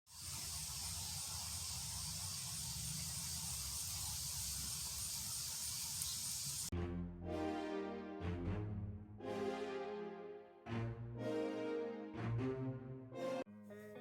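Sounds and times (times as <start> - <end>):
steady hiss: 0.1 - 6.7.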